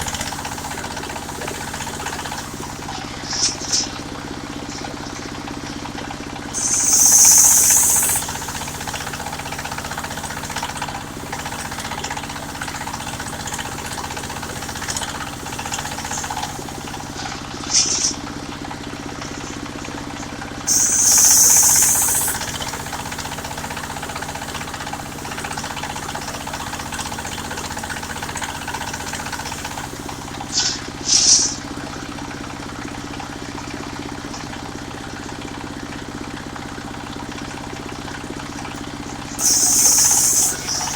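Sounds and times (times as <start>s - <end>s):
loud high hissing bursts: 0.0s - 3.0s, 6.6s - 17.2s, 20.7s - 30.7s, 39.4s - 40.9s
sawmill engine running: 0.0s - 3.0s, 6.6s - 17.4s, 20.7s - 31.0s, 39.4s - 40.9s.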